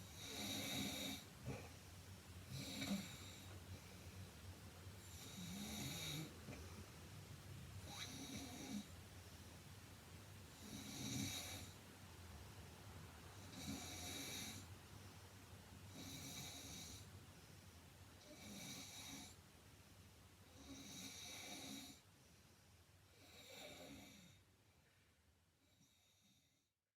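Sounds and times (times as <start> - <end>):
woman snoring: 0.1 - 1.6, 2.5 - 3.6, 5.1 - 6.4, 7.9 - 8.9, 10.6 - 11.8, 13.4 - 14.7, 15.9 - 17.1, 18.2 - 19.4, 20.5 - 22.0, 23.1 - 24.4.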